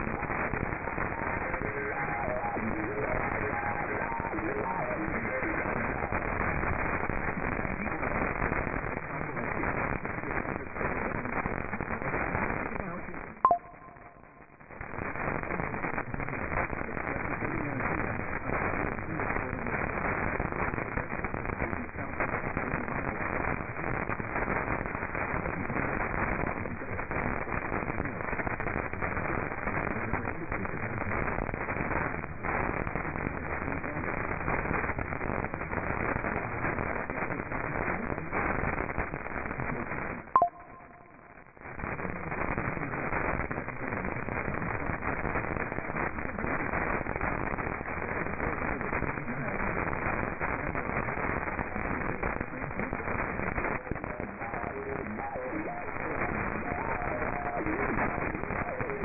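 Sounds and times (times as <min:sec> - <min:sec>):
faint crackles: 0:00.0 - 0:59.0
radio static hiss: 0:00.0 - 0:59.0.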